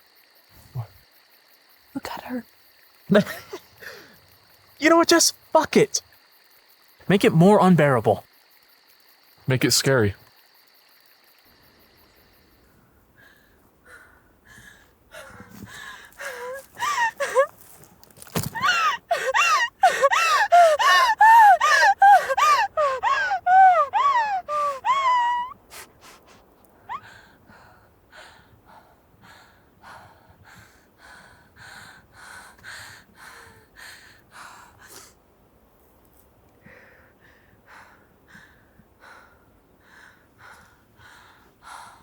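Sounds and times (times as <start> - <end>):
person panting heavily: 13.2 - 17.5, 18.4 - 35.1
person gasping and crying: 15.2 - 17.5, 18.3 - 25.8.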